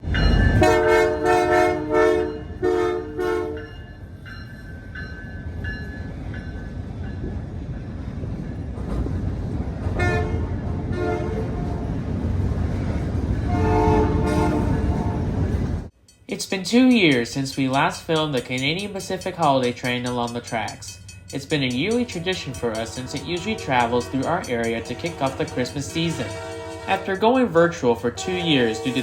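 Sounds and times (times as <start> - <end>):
passing train rumble: 0.0 - 29.0
locomotive air horn blasts: 0.6 - 3.8, 10.0 - 11.9, 13.5 - 15.6, 22.0 - 27.3, 28.0 - 29.0.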